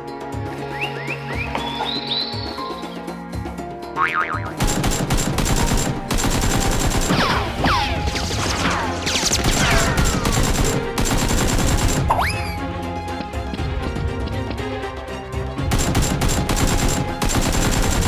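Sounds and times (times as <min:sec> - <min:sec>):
background music: 0:00.0 - 0:18.0
falling whistles: 0:00.6 - 0:03.0
automatic gunfire: 0:04.6 - 0:07.5, 0:09.4 - 0:12.2, 0:15.7 - 0:18.0.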